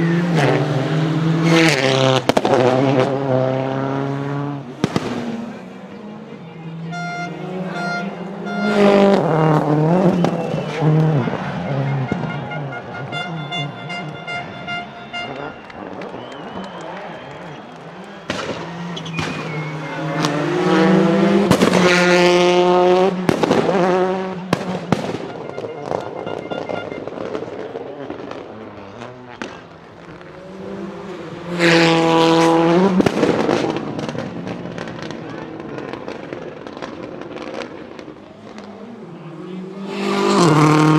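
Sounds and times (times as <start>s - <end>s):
rally car engine revving: 0.0s - 40.9s
exhaust cracks: 8.8s - 39.0s
crackling pops: 15.3s - 19.6s, 24.5s - 30.2s.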